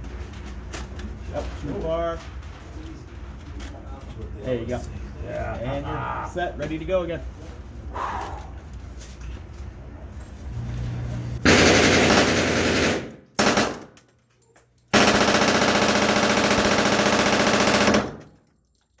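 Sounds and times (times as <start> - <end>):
submachine gun firing bursts: 11.4 - 14.0, 14.9 - 18.4.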